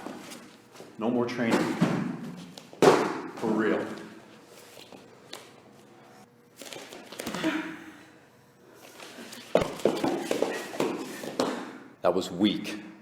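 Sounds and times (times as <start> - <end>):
scuffling footsteps: 9.0 - 11.7.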